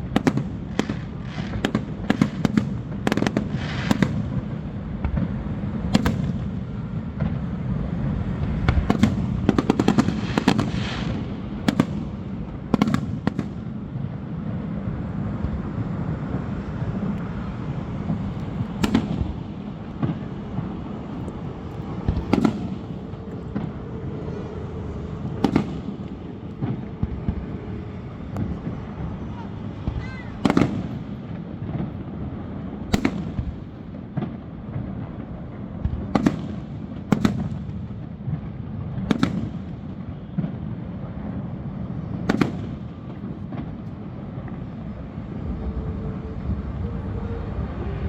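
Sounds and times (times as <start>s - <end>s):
firework booms: 0.0s - 48.0s
low rumble: 14.7s - 29.9s, 43.6s - 48.0s.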